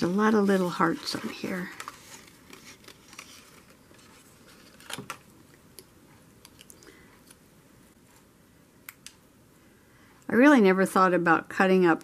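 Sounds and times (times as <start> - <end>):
paper clicks and rustles: 0.0 - 5.3.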